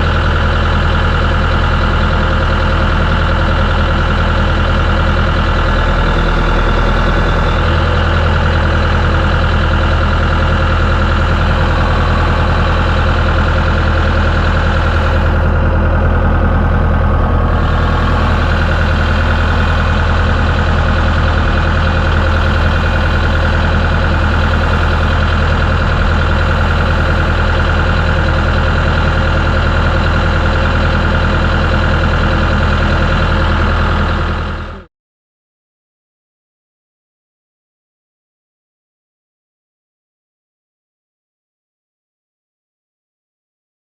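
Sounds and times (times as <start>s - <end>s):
engine droning with whine: 0.0s - 34.9s.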